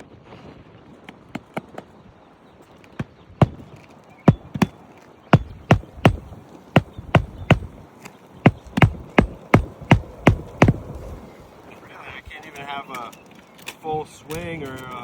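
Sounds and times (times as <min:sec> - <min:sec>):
hammer striking nails: 0:04.3 - 0:04.7, 0:05.4 - 0:07.7, 0:08.5 - 0:10.9.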